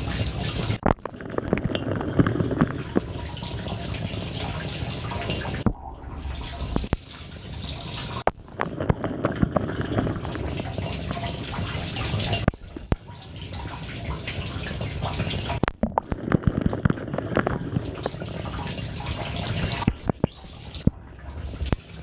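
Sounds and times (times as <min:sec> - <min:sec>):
water spraying in dishwasher: 0:17.1 - 0:20.9.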